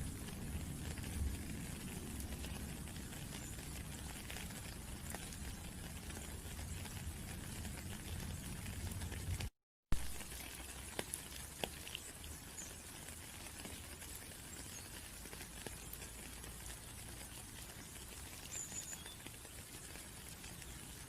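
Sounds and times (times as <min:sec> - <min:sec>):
rain falling: 0:00.0 - 0:21.0.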